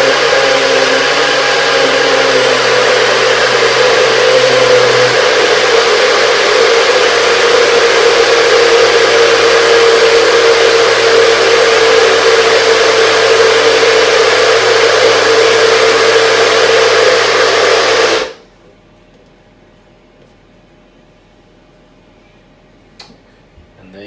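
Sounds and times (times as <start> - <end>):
blender whining: 0.0 - 18.4.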